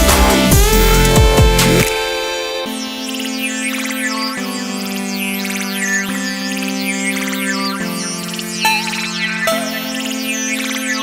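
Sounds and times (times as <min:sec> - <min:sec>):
high synth glides: 0:00.0 - 0:11.0
sustained synthesizer chords: 0:00.0 - 0:11.0.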